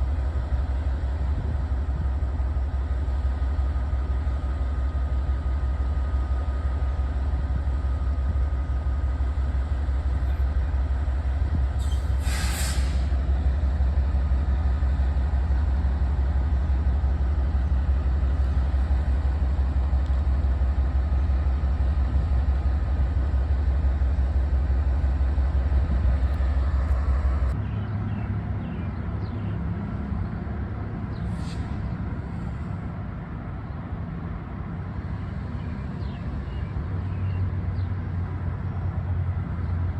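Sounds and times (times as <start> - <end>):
vehicle rumble: 0.0 - 39.9
sharp hiss: 11.8 - 13.2.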